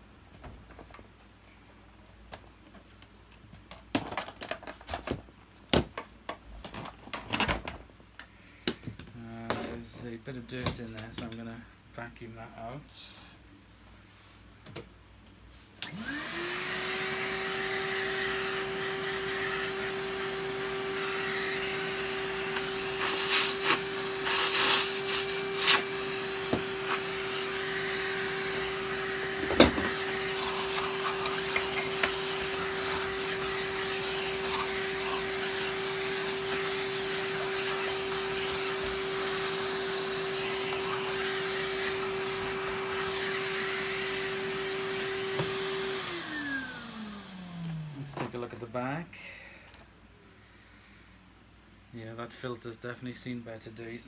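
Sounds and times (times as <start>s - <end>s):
vacuum cleaner whine: 15.8s - 48.4s.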